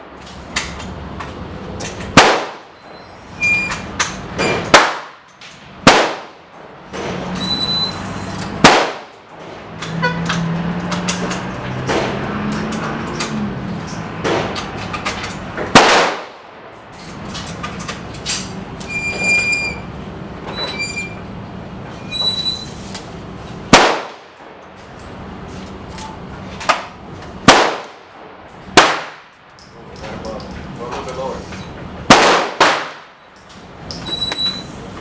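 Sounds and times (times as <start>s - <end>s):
gunshots with echo: 2.2s - 2.7s, 4.7s - 5.2s, 5.8s - 6.4s, 8.6s - 9.6s, 15.7s - 16.4s, 23.7s - 24.3s, 27.4s - 28.0s, 28.8s - 29.3s, 32.1s - 33.1s
high metallic rings: 7.3s - 8.4s, 18.9s - 19.9s, 33.2s - 34.8s.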